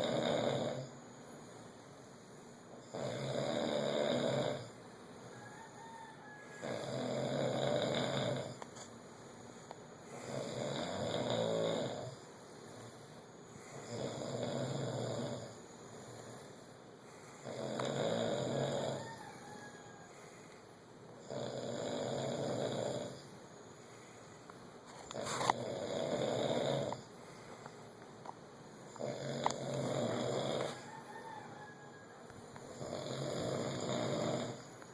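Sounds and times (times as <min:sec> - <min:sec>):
loud rough snoring: 0:00.0 - 0:00.9, 0:02.8 - 0:04.8, 0:06.6 - 0:08.6, 0:10.1 - 0:12.2, 0:13.6 - 0:16.6, 0:17.2 - 0:19.2, 0:21.2 - 0:23.3, 0:25.0 - 0:27.1, 0:28.9 - 0:30.9, 0:32.6 - 0:34.7.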